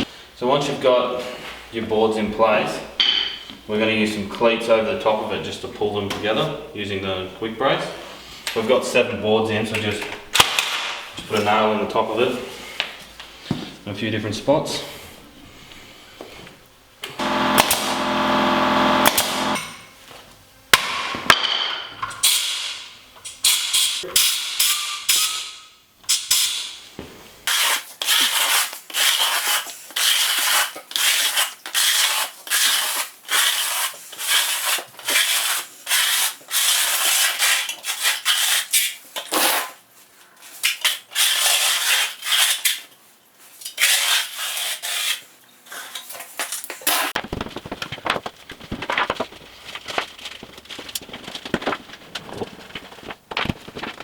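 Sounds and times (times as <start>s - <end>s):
short buzz: 17.0s - 19.8s.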